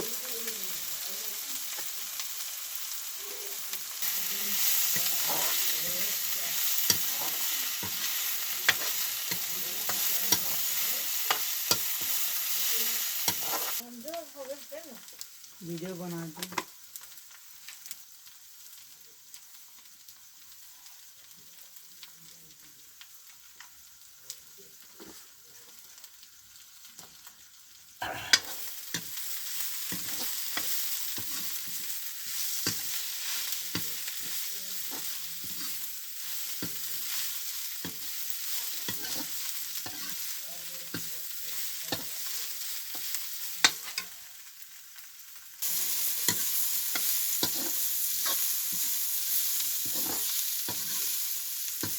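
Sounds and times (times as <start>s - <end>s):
food sizzling in hot oil: 0.0s - 51.9s
spatula scraping pan: 4.0s - 12.3s, 13.2s - 13.8s, 28.0s - 41.1s, 45.7s - 51.2s.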